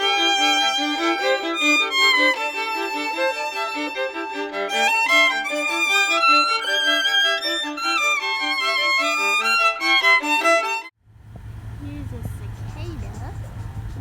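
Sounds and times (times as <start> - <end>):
violin music: 0.0 - 11.0
low steady hum: 11.0 - 14.0.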